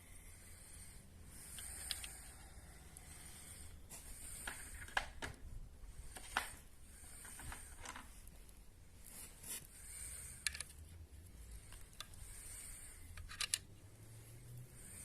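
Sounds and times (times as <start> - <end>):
small parts clicking and knocking: 1.4 - 2.5, 4.2 - 8.5, 10.0 - 13.8.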